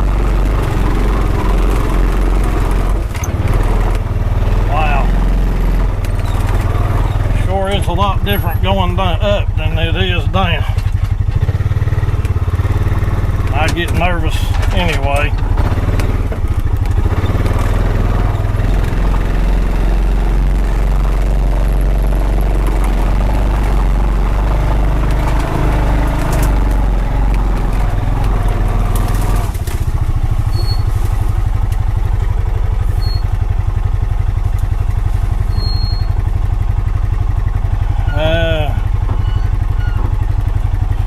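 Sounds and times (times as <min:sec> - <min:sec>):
vehicle engine running: 0:00.0 - 0:41.0
rattles and knocks: 0:10.6 - 0:19.8.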